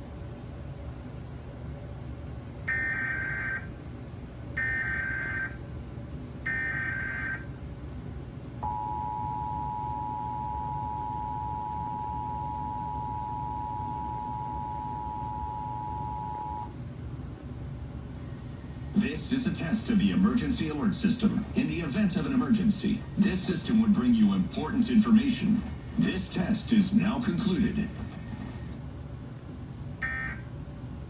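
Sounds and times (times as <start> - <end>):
faint hum and hiss: 0.0 - 31.0
data tone bursts: 8.6 - 16.7
two-tone attention signal: 8.6 - 16.7.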